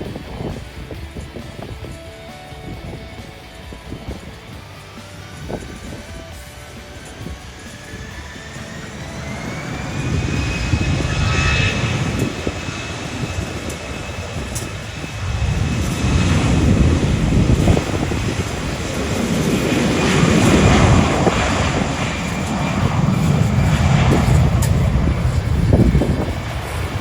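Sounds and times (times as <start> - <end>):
jet airliner engine noise: 0.0 - 27.0
wind buffeting microphone: 0.0 - 27.0.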